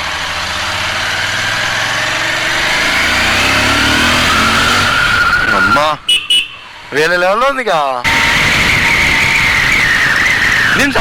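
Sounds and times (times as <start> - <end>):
motorcycle engine accelerating: 0.0 - 5.9, 8.1 - 10.9.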